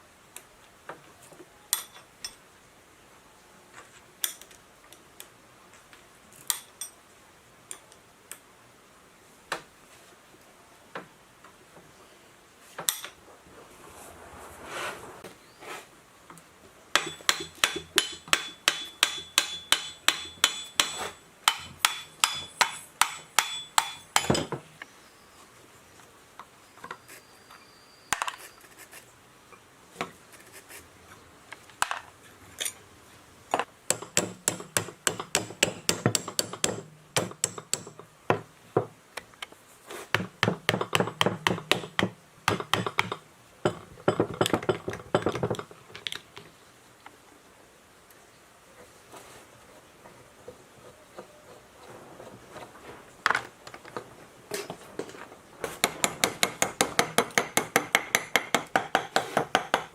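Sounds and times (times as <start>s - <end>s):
hammer striking metal: 17.0s - 24.6s.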